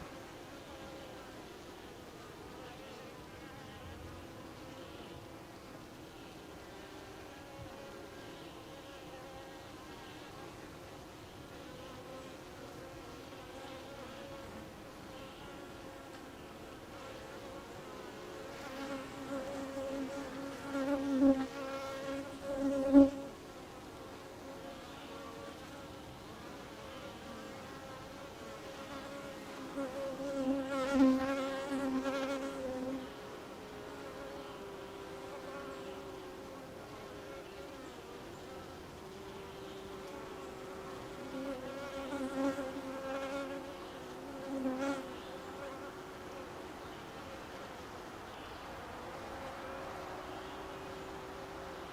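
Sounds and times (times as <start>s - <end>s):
bees buzzing: 11.6s - 46.5s
single bee flying close by: 16.8s - 23.4s, 24.0s - 46.5s.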